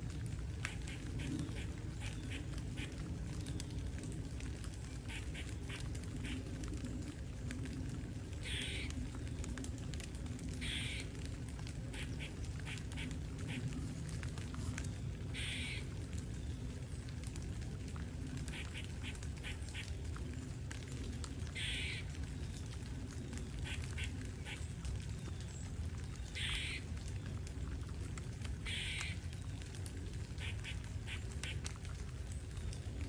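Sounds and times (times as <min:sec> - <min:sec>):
steady low rumble: 0:00.0 - 0:26.6
faint clicks: 0:00.2 - 0:33.0
squirrel calling: 0:08.4 - 0:08.9, 0:10.6 - 0:11.0, 0:15.4 - 0:15.8, 0:21.6 - 0:22.0, 0:26.4 - 0:26.8, 0:28.6 - 0:29.2.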